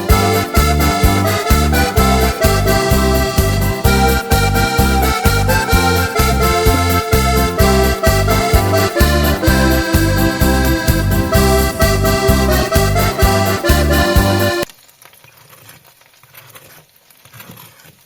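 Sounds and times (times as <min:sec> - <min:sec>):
accordion music with bass beat: 0:00.0 - 0:14.7.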